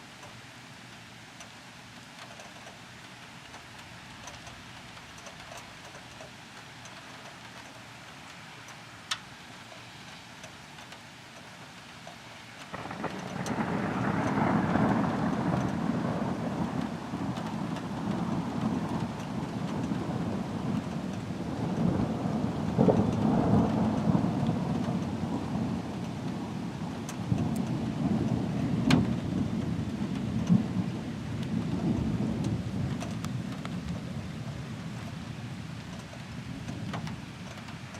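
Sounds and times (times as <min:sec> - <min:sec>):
rain hissing: 0:00.0 - 0:37.9
thunder rumbling: 0:12.7 - 0:37.4.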